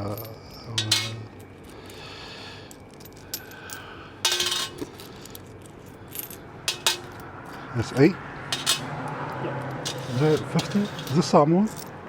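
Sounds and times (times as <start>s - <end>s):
coins clinking and jingling: 0.0s - 2.0s, 2.8s - 7.2s, 8.6s - 8.9s, 9.7s - 11.9s.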